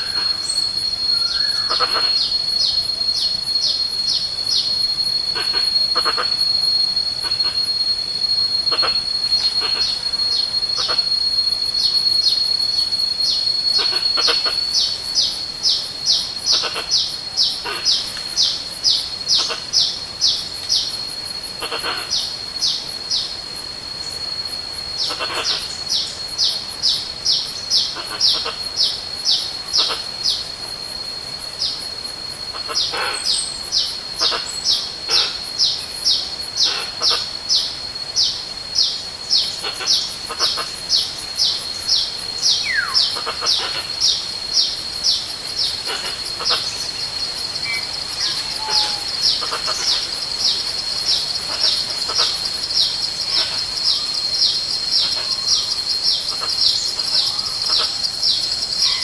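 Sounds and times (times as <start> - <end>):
bird calling high whistled notes: 0.0 - 14.9, 42.4 - 43.1, 46.0 - 50.1
insect whine: 0.0 - 59.0.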